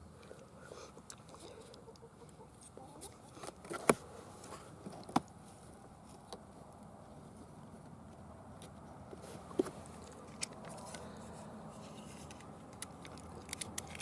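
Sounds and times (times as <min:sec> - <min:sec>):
mouse traps clicking: 0:12.3 - 0:14.0.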